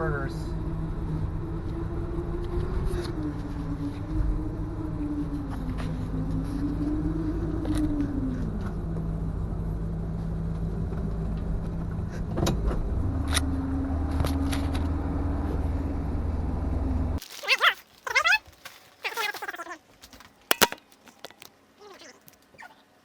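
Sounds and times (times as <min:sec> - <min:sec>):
car engine running from inside: 0:00.0 - 0:17.2.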